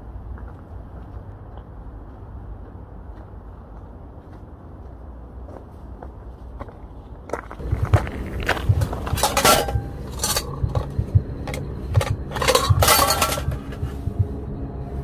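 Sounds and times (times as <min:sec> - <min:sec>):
hard objects clinking together: 0:08.6 - 0:14.0.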